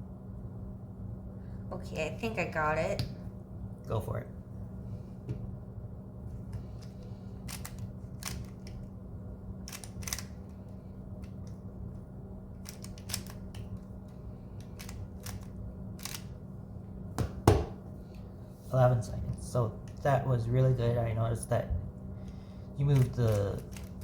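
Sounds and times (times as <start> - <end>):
loud knock: 17.2 - 17.8.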